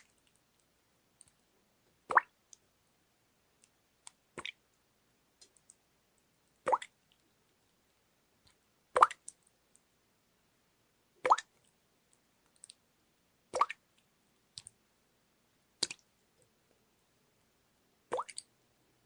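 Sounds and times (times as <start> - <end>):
water drops plopping: 18.1 - 18.5.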